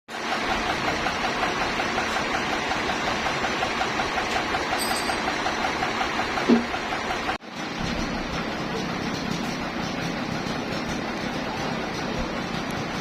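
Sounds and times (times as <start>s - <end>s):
sawmill machinery running: 0.1s - 13.0s
high ringing tone: 4.8s - 5.3s.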